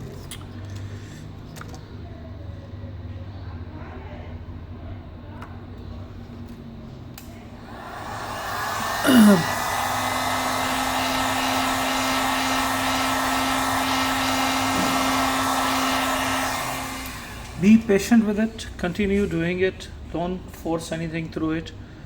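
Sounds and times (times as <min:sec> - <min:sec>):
heat gun blowing: 0:07.6 - 0:18.1.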